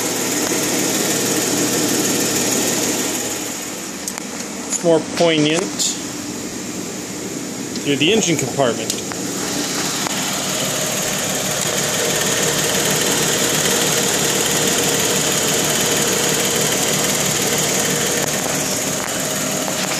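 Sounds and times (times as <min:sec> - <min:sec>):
car engine idling: 0:00.0 - 0:19.9
fast even engine ticking: 0:10.1 - 0:19.8.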